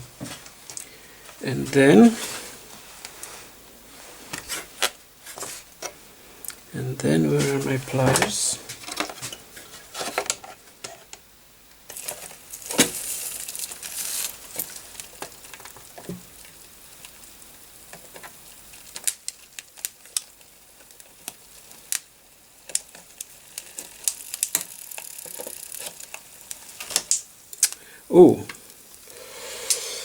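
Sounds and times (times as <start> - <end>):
flux sizzling in molten solder: 11.8 - 30.0
sharp clicks and crackles: 17.9 - 27.8
loud hiss: 26.6 - 30.0.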